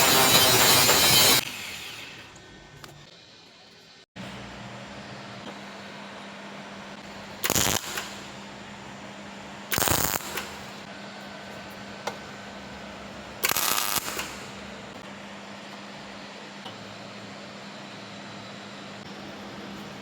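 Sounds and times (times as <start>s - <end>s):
welding arc crackle: 7.4s - 8.4s, 9.7s - 10.7s, 13.4s - 14.6s.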